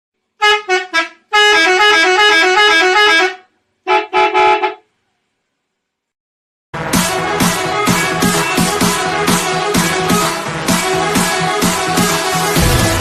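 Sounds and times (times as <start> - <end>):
bus musical horn: 0.4 - 4.9.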